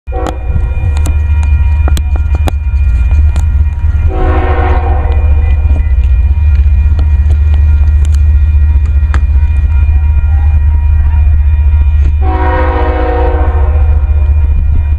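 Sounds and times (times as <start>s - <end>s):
locomotive horn blast: 0.1s - 0.7s, 4.1s - 5.7s, 12.2s - 14.3s
passing train rumble: 0.1s - 14.9s.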